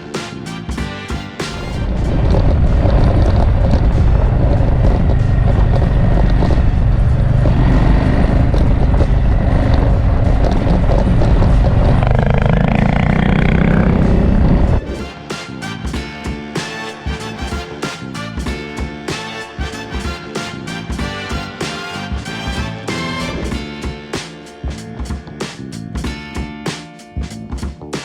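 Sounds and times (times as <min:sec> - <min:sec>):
motorcycle engine running: 0:01.7 - 0:14.8
wind rush on microphone: 0:01.7 - 0:14.9.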